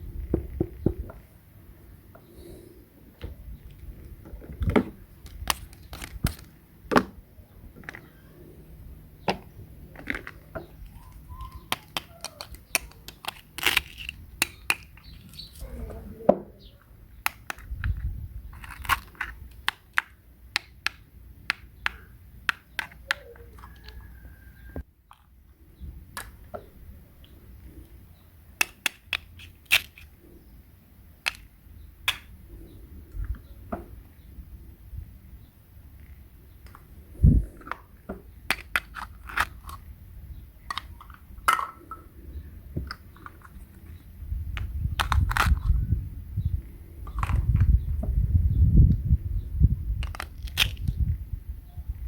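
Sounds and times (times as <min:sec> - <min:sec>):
small hard objects clicking: 0:05.2 - 0:06.6, 0:09.9 - 0:15.6, 0:17.2 - 0:24.0, 0:28.6 - 0:30.1, 0:31.2 - 0:32.4, 0:40.6 - 0:42.0, 0:44.5 - 0:45.9, 0:50.0 - 0:51.1.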